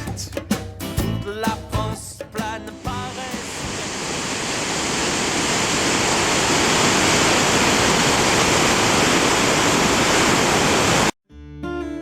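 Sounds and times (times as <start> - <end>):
whitewater roaring: 2.8 - 11.1.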